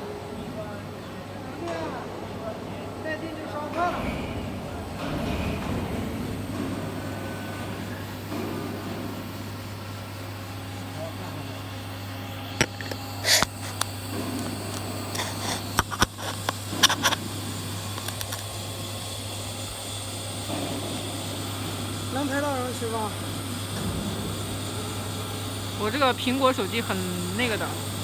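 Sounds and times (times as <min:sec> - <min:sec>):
electrical hum of machinery: 0:00.0 - 0:28.0
sharp clicks and knocks: 0:12.6 - 0:17.3.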